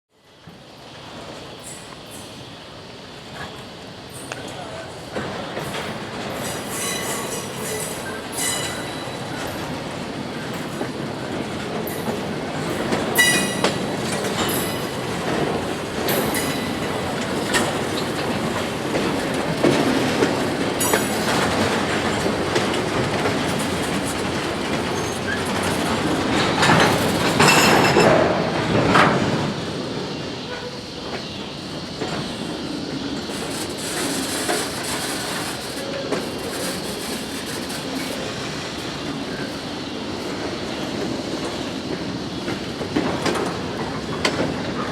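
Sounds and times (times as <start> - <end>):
train wheels on rails: 0.2 - 44.9
high wheel squeals: 6.3 - 9.7, 13.2 - 15.3.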